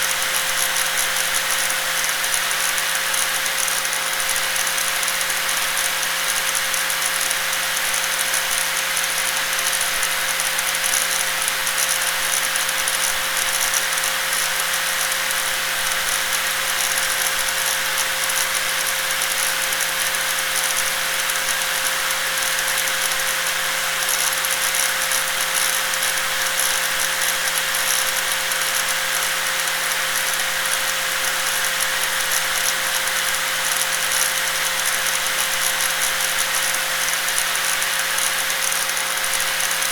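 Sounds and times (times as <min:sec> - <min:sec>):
angle grinder running: 0:28.5 - 0:39.9.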